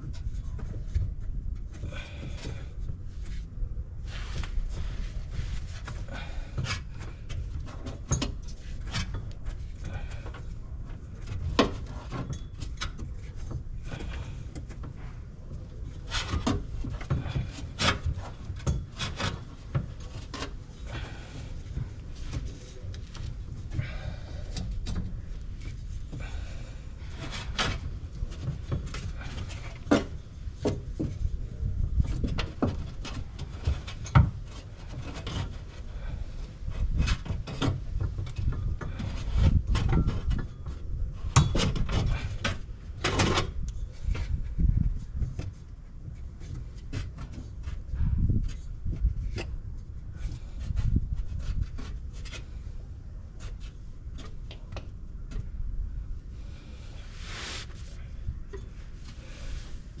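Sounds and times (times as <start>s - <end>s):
rubbing and scraping: 56.5s - 60.0s.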